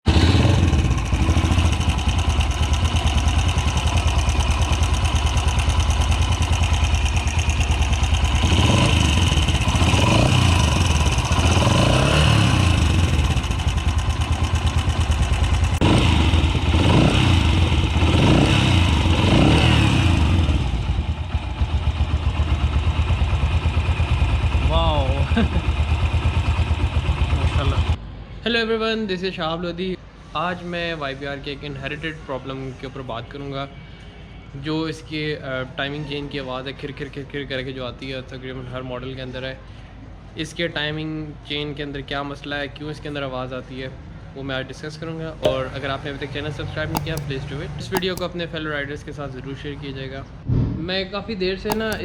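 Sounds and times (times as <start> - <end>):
motorcycle engine idling and revving: 0.0 - 28.0, 46.9 - 48.3, 51.7 - 52.0.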